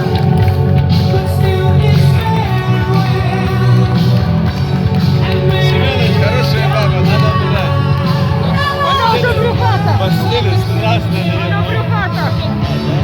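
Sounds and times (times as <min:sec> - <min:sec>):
loud rock music with singing: 0:00.0 - 0:13.0.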